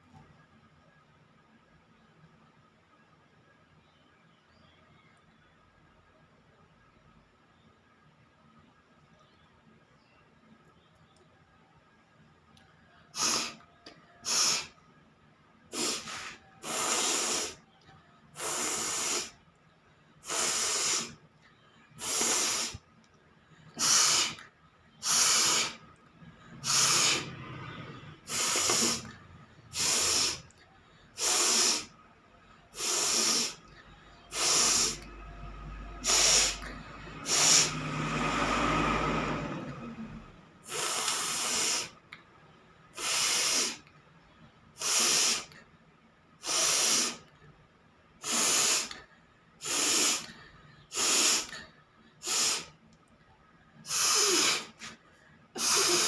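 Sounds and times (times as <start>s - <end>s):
person forcing air through nose: 13.1s - 13.6s, 14.2s - 14.8s, 15.7s - 17.6s, 18.4s - 19.4s, 20.2s - 21.2s, 22.0s - 22.8s, 23.8s - 24.4s, 25.0s - 25.9s, 26.5s - 27.5s, 28.2s - 29.1s, 29.7s - 30.6s, 31.2s - 31.9s, 32.7s - 33.7s, 34.3s - 35.1s, 36.0s - 37.8s, 40.6s - 42.0s, 43.0s - 43.8s, 44.8s - 45.6s, 46.4s - 47.3s, 48.2s - 52.8s, 53.8s - 55.0s, 55.6s - 56.0s.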